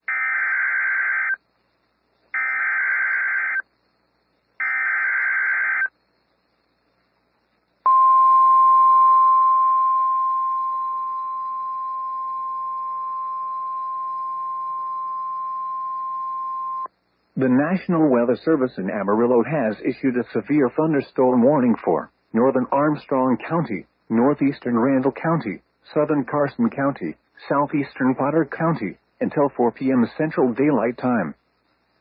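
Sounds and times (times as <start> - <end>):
screeching digital data tones: 0.1 - 1.4, 2.4 - 3.7, 4.6 - 6.0, 9.6 - 16.9
steady warning alarm tone: 7.9 - 16.9.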